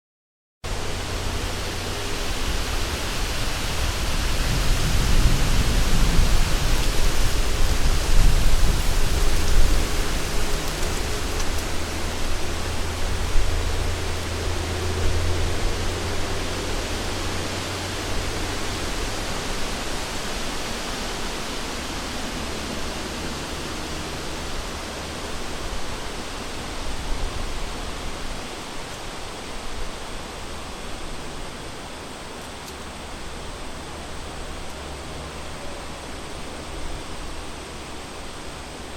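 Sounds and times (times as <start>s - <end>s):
wind blowing through forest: 0.6s - 38.9s.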